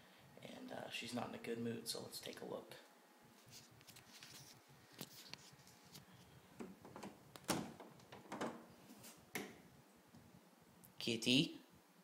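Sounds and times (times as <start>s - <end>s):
door knocks and rattles: 6.6s - 8.7s.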